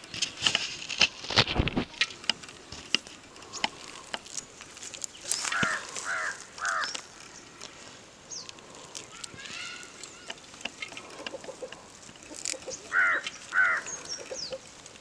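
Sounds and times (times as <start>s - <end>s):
bird calling: 5.1s - 15.0s.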